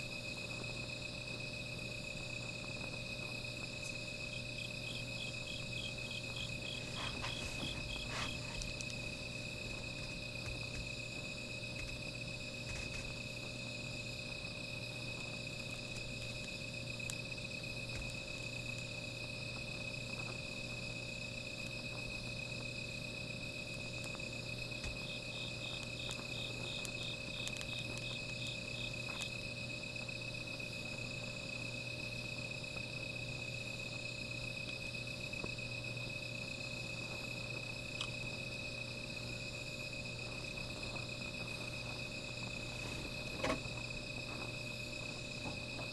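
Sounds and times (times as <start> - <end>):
crickets trilling: 0.0 - 45.9
insect chirping in quick pulses: 3.9 - 9.3, 25.0 - 29.4.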